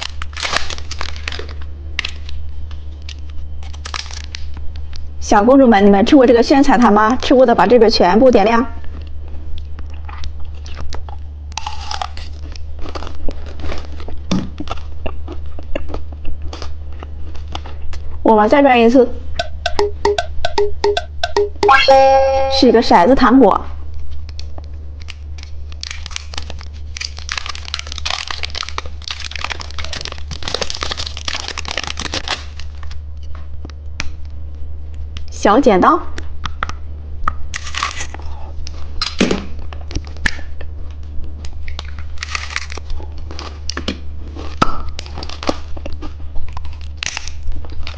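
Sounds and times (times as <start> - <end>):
hard candy crunching: 0.0 - 2.4, 9.6 - 18.0, 25.0 - 33.0, 37.3 - 39.2, 41.3 - 47.9
wrapper rustling: 0.0 - 2.4, 25.4 - 33.0
low hum: 17.5 - 24.0.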